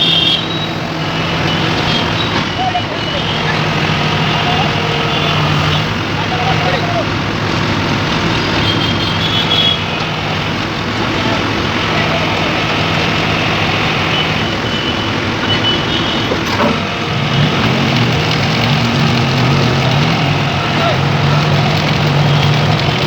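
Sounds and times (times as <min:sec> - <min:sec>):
diesel engine: 0:00.0 - 0:23.0
vibratory hammer driving piles: 0:16.1 - 0:23.0.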